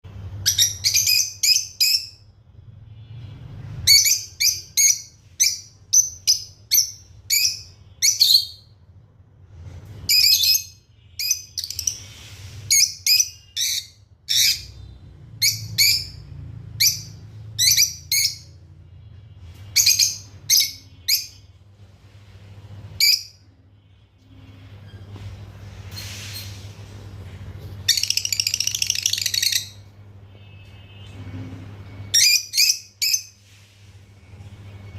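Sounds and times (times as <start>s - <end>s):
lovebirds chirping: 27.8s - 29.9s.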